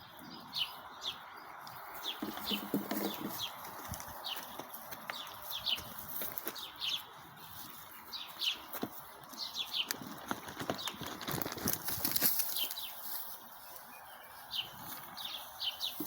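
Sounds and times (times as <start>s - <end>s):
small bird chirping: 0.0s - 16.0s
sheep hooves knocking: 2.0s - 6.7s.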